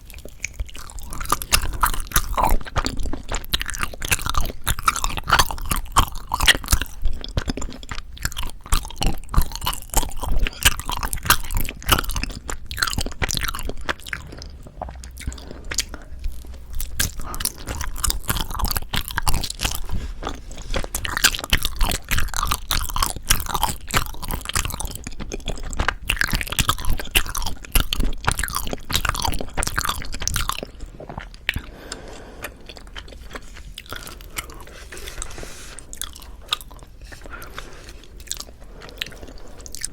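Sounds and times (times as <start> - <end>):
close chewing mouth clicks: 0.0 - 39.9.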